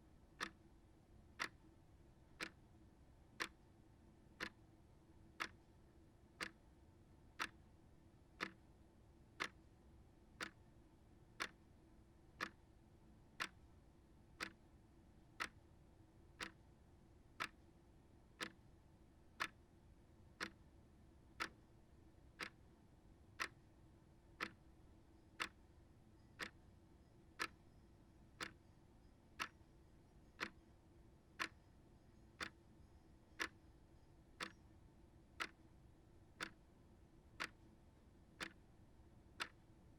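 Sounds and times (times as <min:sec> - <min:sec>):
clock ticking: 0:08.4 - 0:08.6, 0:12.4 - 0:12.6, 0:14.4 - 0:14.6, 0:16.4 - 0:16.6, 0:18.4 - 0:18.6, 0:22.4 - 0:22.6, 0:24.4 - 0:24.6, 0:25.4 - 0:25.6, 0:27.4 - 0:27.6, 0:30.4 - 0:30.6, 0:37.4 - 0:37.6, 0:39.4 - 0:39.6.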